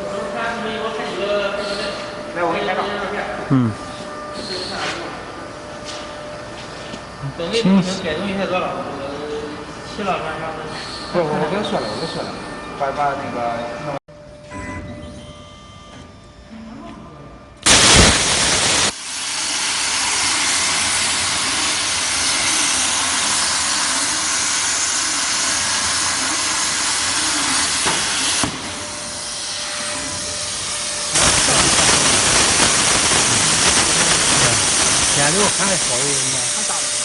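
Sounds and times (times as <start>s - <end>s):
loud steady hiss: 17.6s - 37.0s.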